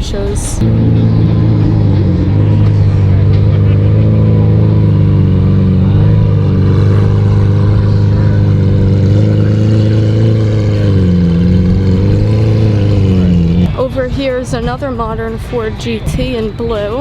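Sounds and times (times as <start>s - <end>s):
car engine idling: 0.1s - 15.4s.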